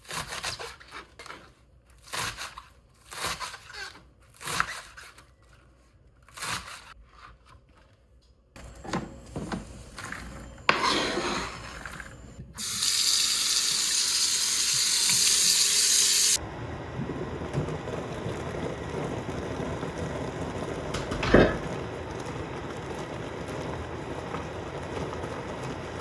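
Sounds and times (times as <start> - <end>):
tap running into sink: 20.9 - 21.8.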